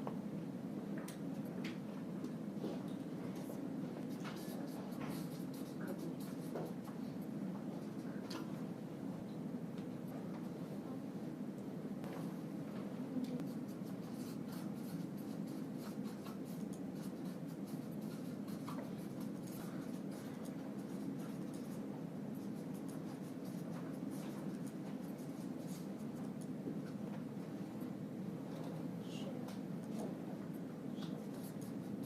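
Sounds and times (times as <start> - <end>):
steady low hum: 0.0 - 32.0
pen scratching on paper: 4.1 - 6.8, 13.4 - 26.2, 31.1 - 32.0.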